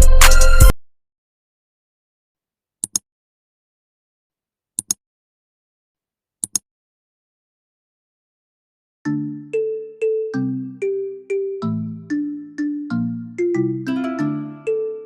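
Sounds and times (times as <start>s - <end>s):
background music: 0.0s - 0.7s, 9.1s - 15.0s.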